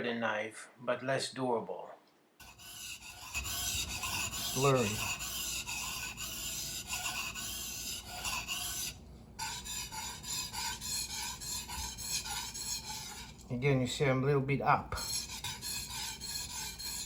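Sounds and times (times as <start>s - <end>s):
knife scraping on whetstone: 2.4s - 13.5s, 15.0s - 17.0s.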